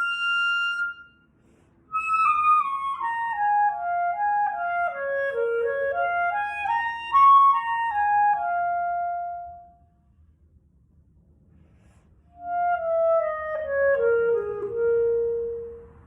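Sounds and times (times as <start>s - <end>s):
solo clarinet playing blues: 0.0s - 1.3s, 1.9s - 9.7s, 12.4s - 16.0s.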